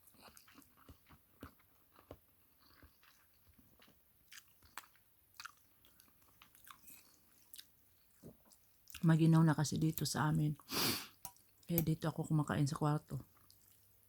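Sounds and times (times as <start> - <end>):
mouth clicks and crunches: 0.0 - 7.7
faint chewing of noodles: 0.0 - 9.1, 13.2 - 14.0.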